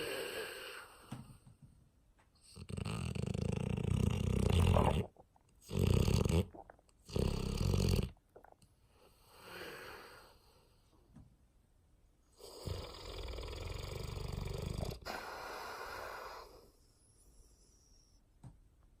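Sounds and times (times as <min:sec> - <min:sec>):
dog snoring: 0:02.4 - 0:08.2, 0:12.4 - 0:16.7.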